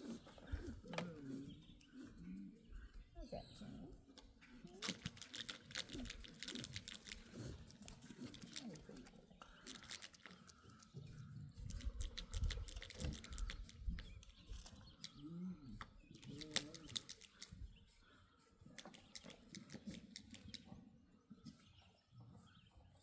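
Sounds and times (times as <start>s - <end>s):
clicks and rustling: 4.8s - 11.0s, 11.6s - 15.2s, 16.1s - 17.6s, 18.8s - 20.7s.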